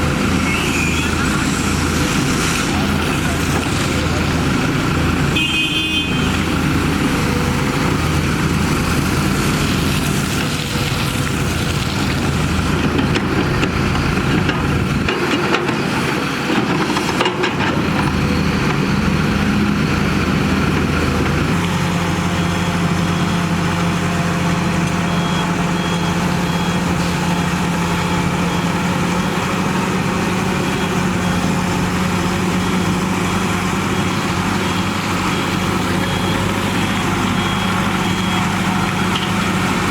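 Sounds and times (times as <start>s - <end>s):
diesel machinery running: 0.0s - 39.9s
reversing alarm beeping: 17.9s - 39.9s.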